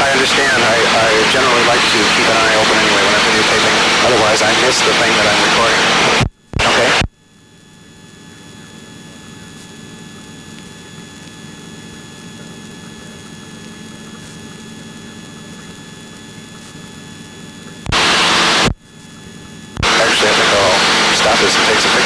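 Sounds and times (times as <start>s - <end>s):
whining tones: 0.0s - 7.0s, 17.9s - 18.7s, 19.8s - 22.0s
helicopter cabin drone: 0.0s - 14.0s, 17.0s - 22.0s
loud burst of hiss: 17.9s - 18.7s, 19.8s - 22.0s.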